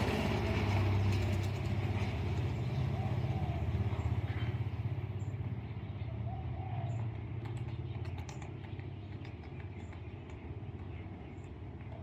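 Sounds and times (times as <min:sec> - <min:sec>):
low pulsing engine rumble: 0:00.0 - 0:12.0
bird cooing: 0:02.7 - 0:04.6, 0:06.1 - 0:07.2
faint high chirps and clicks: 0:07.0 - 0:12.0.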